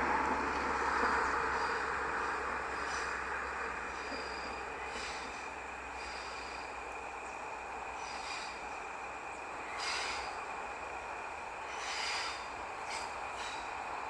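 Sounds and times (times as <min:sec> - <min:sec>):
wheels squealing: 0:00.0 - 0:06.8, 0:11.6 - 0:13.9
constant high whine: 0:00.0 - 0:14.0
railcar rolling on track: 0:00.0 - 0:14.0.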